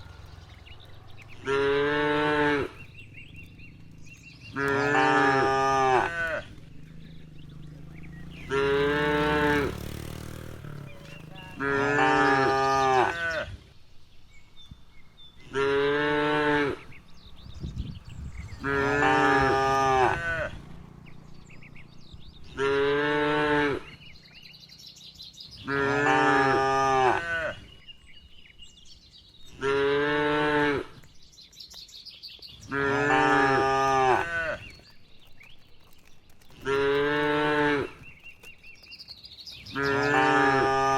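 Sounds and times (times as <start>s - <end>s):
cow mooing: 1.4s - 2.8s, 4.5s - 6.6s, 8.4s - 9.7s, 11.4s - 13.5s, 15.4s - 17.0s, 18.6s - 20.7s, 22.5s - 24.0s, 25.6s - 27.8s, 29.5s - 31.0s, 32.7s - 34.6s, 39.8s - 40.9s.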